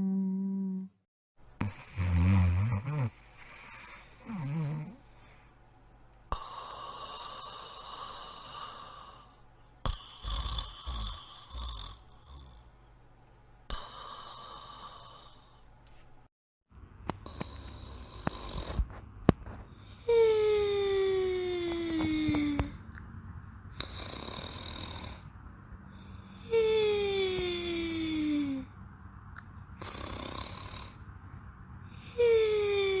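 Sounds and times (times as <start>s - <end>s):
cartoon snoring: 1.6s - 5.4s, 6.3s - 12.7s, 13.7s - 15.6s, 17.2s - 18.8s, 23.7s - 25.3s, 29.8s - 31.0s.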